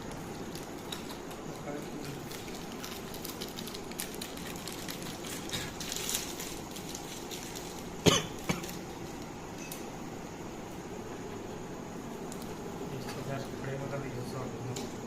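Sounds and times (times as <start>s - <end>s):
short coughs: 8.0s - 8.7s.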